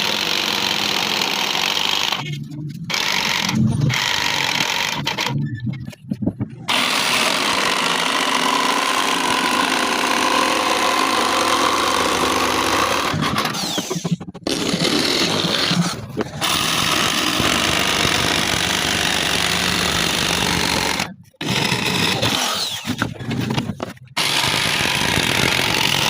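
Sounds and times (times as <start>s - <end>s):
power saw cutting wood: 0.0s - 2.3s, 6.7s - 23.2s, 24.2s - 26.0s.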